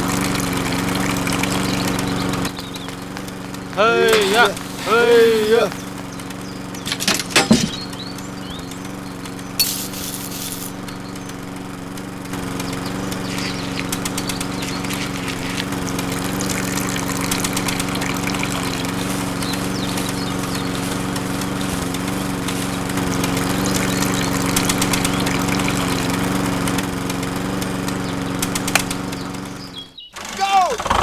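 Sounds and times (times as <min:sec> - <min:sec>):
small motor humming: 0:00.0 - 0:31.0
short hiss: 0:09.6 - 0:10.8.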